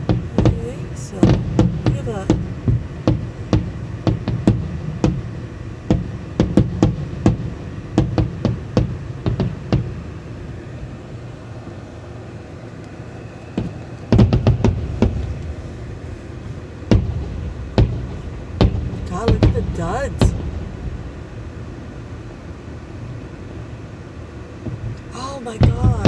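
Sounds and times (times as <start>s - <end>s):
fireworks banging and popping: 0.0s - 10.3s, 13.6s - 15.6s, 16.3s - 21.1s, 24.6s - 26.0s.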